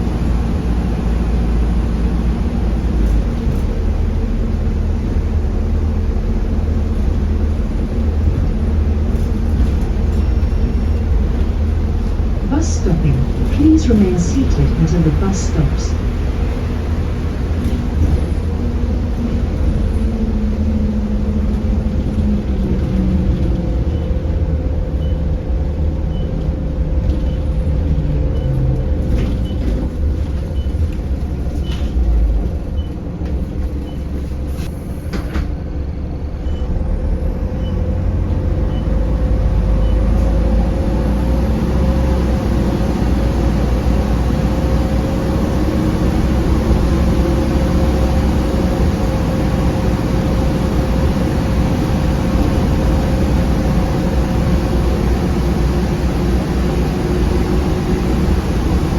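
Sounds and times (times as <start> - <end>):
bus diesel engine running: 0.0 - 58.9.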